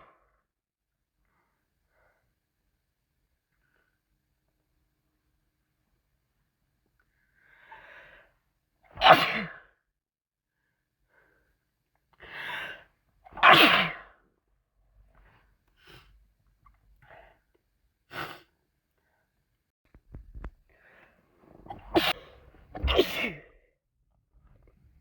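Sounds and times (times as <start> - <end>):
person sneezing: 9.0 - 9.7, 13.3 - 14.2, 21.6 - 23.6.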